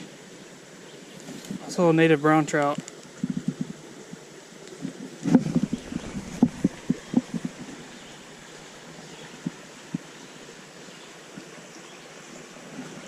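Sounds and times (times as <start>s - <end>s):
faint steady hiss: 0.0s - 13.0s
soft low thumps of fish: 4.8s - 8.0s.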